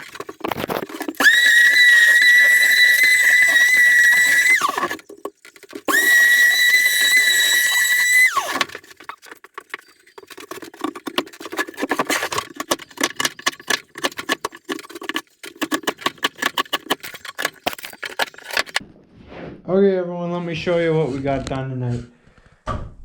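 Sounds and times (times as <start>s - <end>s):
scraping and clicking on wood: 0.0s - 18.8s
power tool whining: 0.6s - 5.1s, 5.7s - 9.0s.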